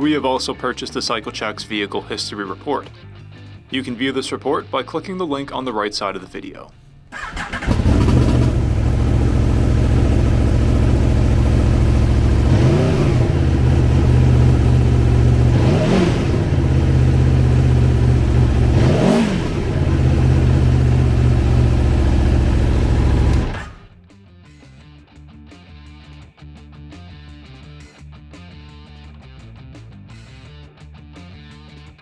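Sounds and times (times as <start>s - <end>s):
motorcycle engine idling and revving: 7.1s - 24.0s.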